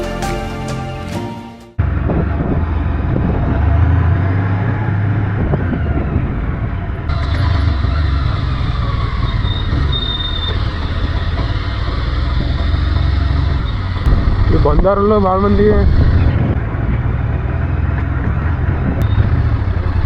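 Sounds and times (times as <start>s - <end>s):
wind rushing over microphone: 1.8s - 8.8s, 14.1s - 17.5s
motorcycle engine rumble: 1.8s - 20.0s.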